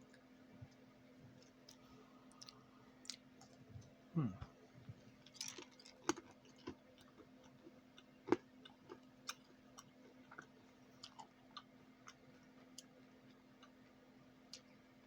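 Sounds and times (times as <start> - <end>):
faint steady hum: 0.0 - 15.0
person chewing crunchy candy: 5.2 - 13.8.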